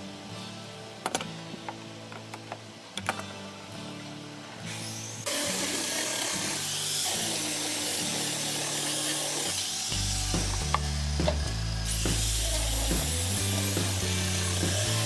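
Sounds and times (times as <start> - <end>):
background music: 0.0 - 15.0.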